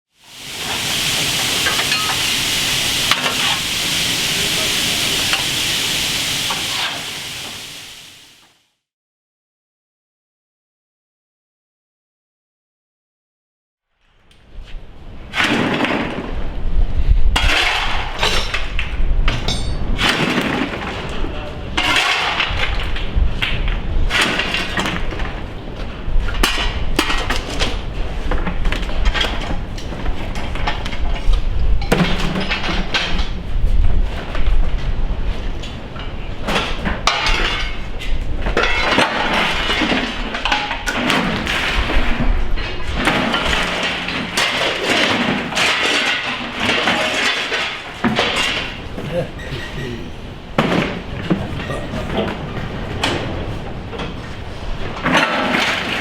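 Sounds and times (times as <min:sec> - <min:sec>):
clinks: 0:01.6 - 0:02.3, 0:19.3 - 0:19.9
hard objects clattering and crashing: 0:17.4 - 0:25.5, 0:36.4 - 0:49.0, 0:54.8 - 0:56.0.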